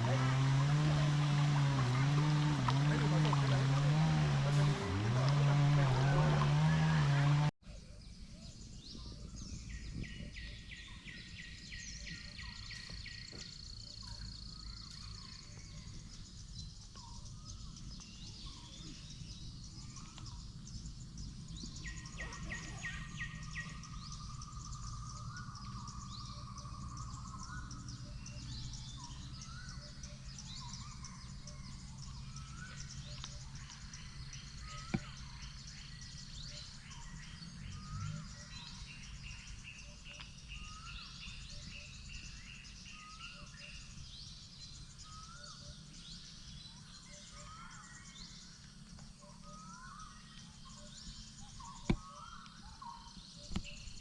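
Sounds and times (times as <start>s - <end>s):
birds calling and chirping: 0.0s - 54.0s.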